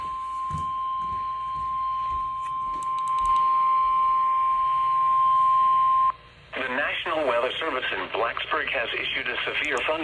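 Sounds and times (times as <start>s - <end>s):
steady high alarm tone: 0.0s - 6.2s
faint radio hiss: 6.2s - 10.0s.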